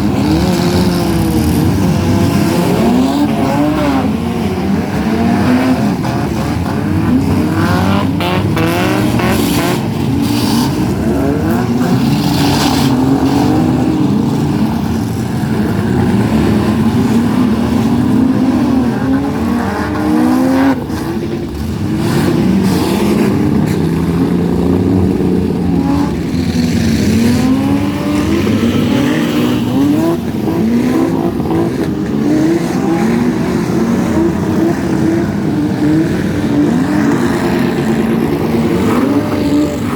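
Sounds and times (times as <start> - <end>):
car engines revving hard: 0.0 - 39.9.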